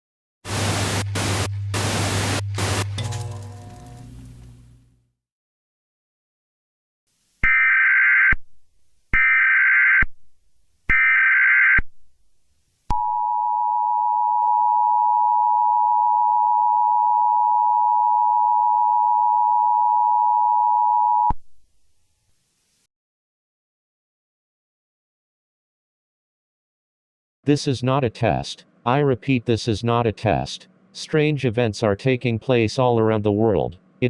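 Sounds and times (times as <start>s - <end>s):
header data bursts: 0.5s - 3.9s.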